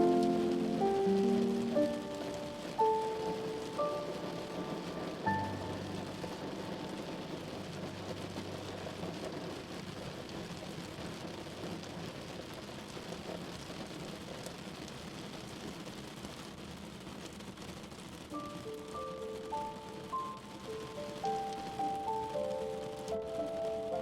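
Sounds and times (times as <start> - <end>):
soft music: 0.0 - 9.9, 18.3 - 24.0
heavy rain falling: 0.0 - 24.0.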